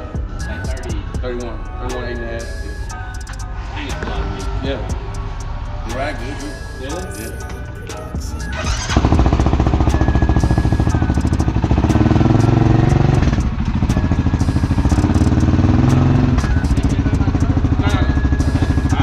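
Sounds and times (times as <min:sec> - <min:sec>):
quad bike engine revving and idling: 0:08.5 - 0:19.0.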